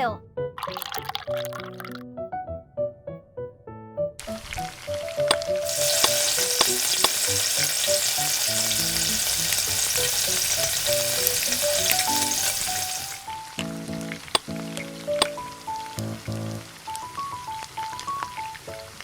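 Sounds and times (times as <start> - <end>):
hot oil sizzling in pan: 4.2 - 19.0
utensil stirring clicks: 5.2 - 13.2.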